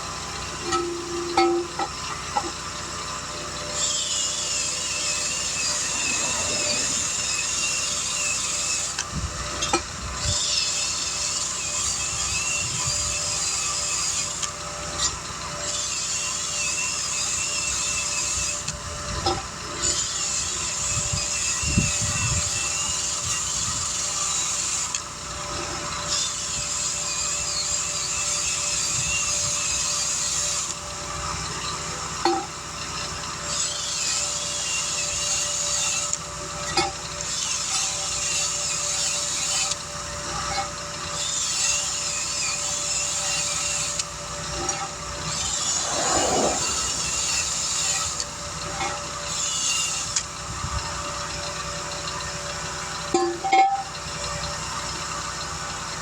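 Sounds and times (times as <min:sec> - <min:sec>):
power tool rasping whir: 0:02.9 - 0:18.8.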